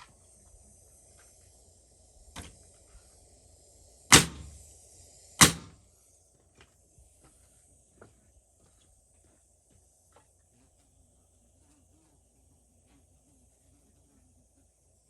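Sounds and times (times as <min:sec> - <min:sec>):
hammer striking nails into wood: 0:04.1 - 0:04.5, 0:05.4 - 0:05.8.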